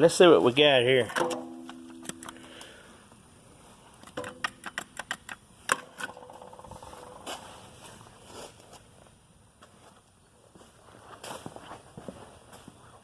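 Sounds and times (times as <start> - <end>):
metal impacts ringing: 1.2 - 2.2.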